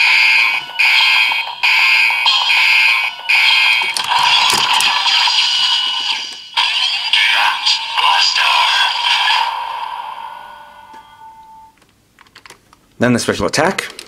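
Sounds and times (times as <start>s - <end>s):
toy belt electronic beeping tune: 0.0s - 6.2s.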